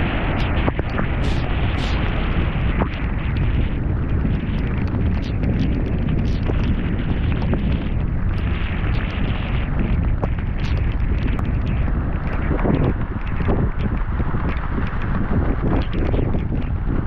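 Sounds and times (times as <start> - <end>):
heavy rain: 0.0 - 17.0
wind buffeting the microphone: 0.0 - 17.0
small ticks: 9.9 - 16.8.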